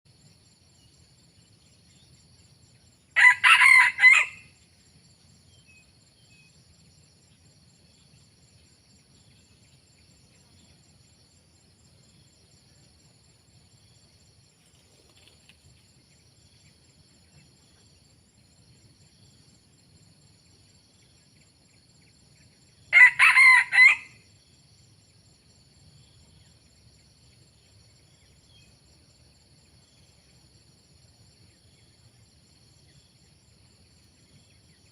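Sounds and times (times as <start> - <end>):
rooster crowing: 3.2 - 4.6, 22.9 - 24.3.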